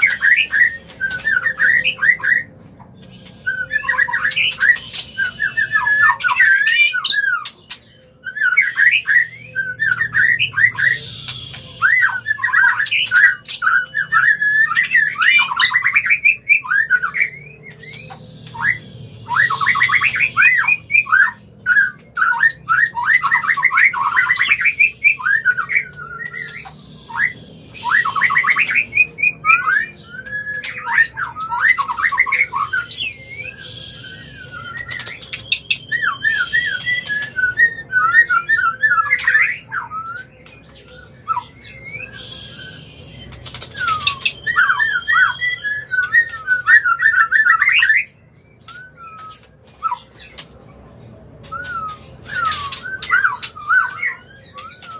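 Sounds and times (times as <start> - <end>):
harsh hissing bird notes: 0.0 - 1.2, 3.0 - 6.7, 8.6 - 13.2, 17.6 - 21.6, 24.0 - 29.4, 32.4 - 37.6, 41.6 - 45.3
bird singing whistled phrases: 0.0 - 50.6, 51.3 - 54.9.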